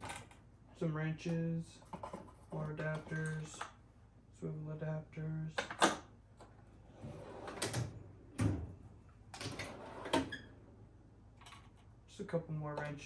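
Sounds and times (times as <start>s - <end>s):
metal drawers sliding on runners: 9.4s - 10.4s.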